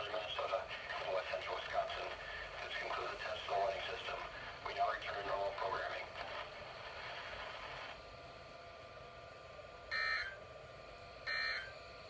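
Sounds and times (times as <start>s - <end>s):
radio hiss: 0.0s - 8.0s.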